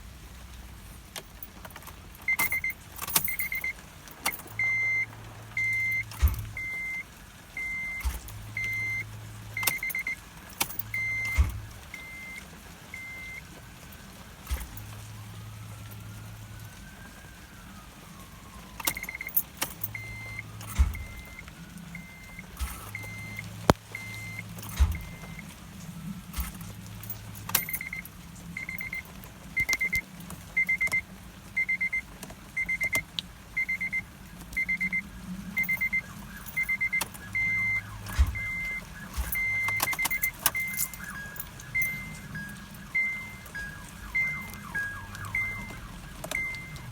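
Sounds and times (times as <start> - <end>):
keys jangling: 1.2 - 5.0, 5.6 - 7.0, 9.6 - 13.4, 14.4 - 15.0, 18.8 - 25.5, 26.3 - 30.0, 35.5 - 46.9
car warning chime beeping: 1.2 - 16.9, 18.1 - 46.9.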